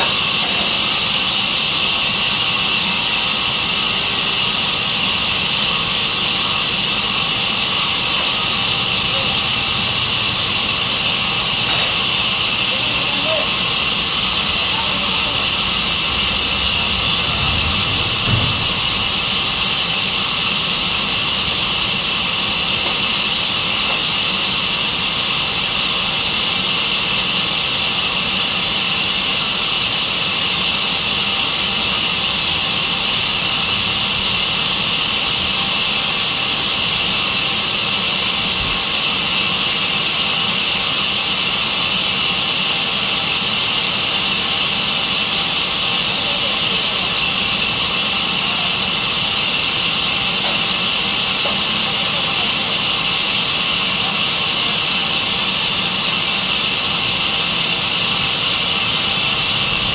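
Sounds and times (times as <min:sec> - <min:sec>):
band saw running: 0:00.0 - 0:59.9
low knock: 0:16.9 - 0:19.4.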